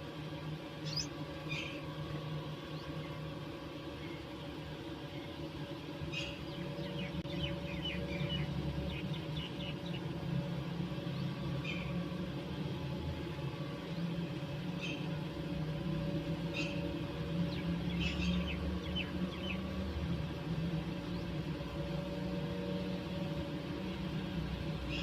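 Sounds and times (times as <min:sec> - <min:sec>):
low steady hum: 0:00.0 - 0:25.0
sparrows chirping: 0:00.8 - 0:01.8, 0:06.1 - 0:10.1, 0:11.2 - 0:11.9, 0:16.5 - 0:19.8.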